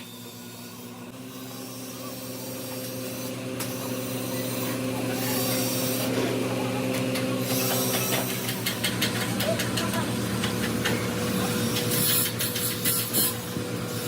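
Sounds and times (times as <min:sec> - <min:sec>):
vehicle engine running: 0:03.6 - 0:14.0.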